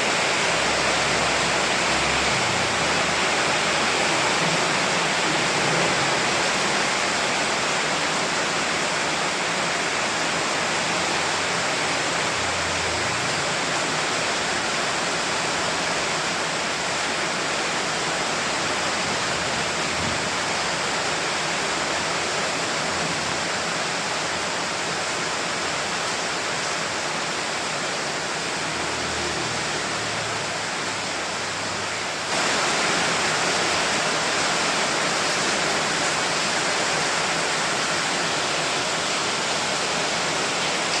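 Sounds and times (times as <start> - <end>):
dense rain hiss: 0.0 - 41.0.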